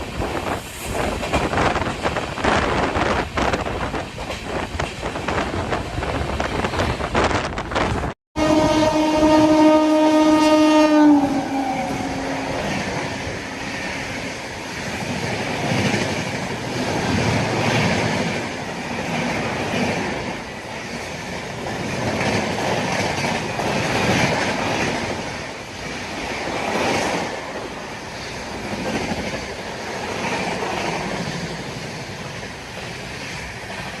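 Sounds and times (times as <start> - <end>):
train rumble and wheel clatter: 0.0 - 34.0
train horn: 8.4 - 13.6.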